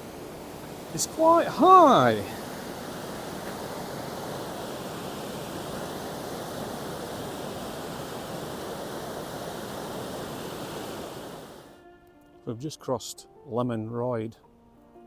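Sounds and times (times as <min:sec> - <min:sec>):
river pouring over a weir: 0:00.0 - 0:11.8.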